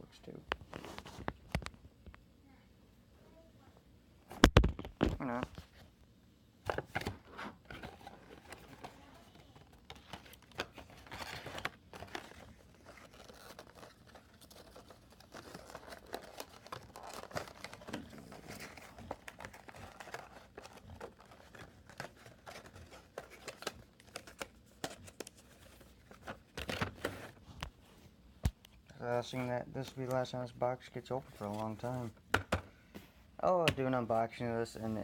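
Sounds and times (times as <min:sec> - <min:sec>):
cardboard packaging crinkling: 0:06.8 - 0:27.4
crinkling scrape: 0:06.9 - 0:28.1.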